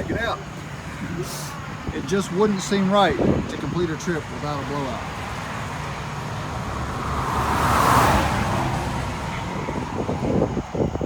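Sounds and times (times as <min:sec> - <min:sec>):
low traffic rumble: 0:00.0 - 0:11.0
vehicle passing: 0:00.0 - 0:11.0.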